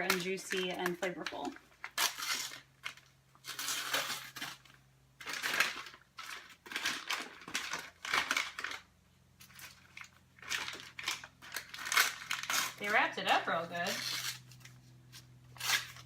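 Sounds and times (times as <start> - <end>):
plastic packaging crinkling: 0.0 - 16.0.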